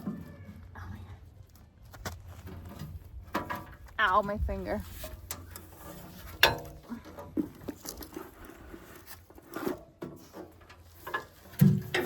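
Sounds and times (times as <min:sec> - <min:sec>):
hand tools and metal parts knocking: 0:05.1 - 0:08.3, 0:09.4 - 0:12.0.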